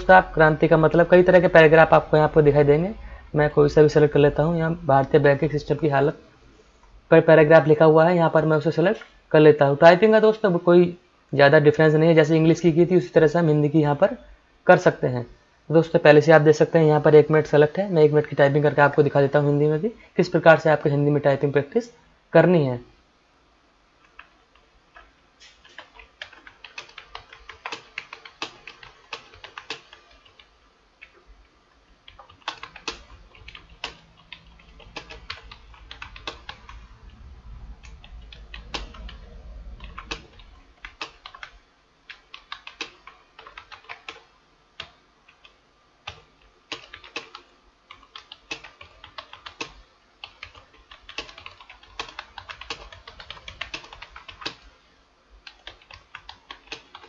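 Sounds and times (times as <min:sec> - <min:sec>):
low rumble: 0:00.0 - 0:05.9, 0:33.6 - 0:40.9
computer keyboard typing: 0:24.0 - 0:31.3, 0:32.0 - 0:37.2, 0:37.8 - 0:54.7, 0:55.4 - 0:57.0.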